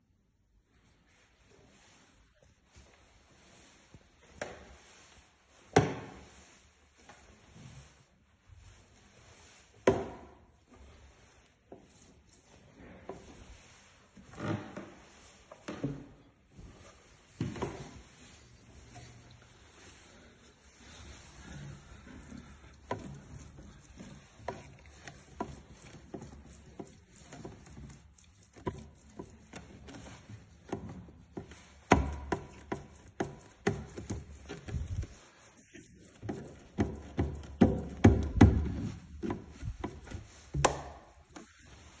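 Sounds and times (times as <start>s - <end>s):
footsteps on wooden stairs: 14.3s - 19.1s, 36.0s - 41.9s.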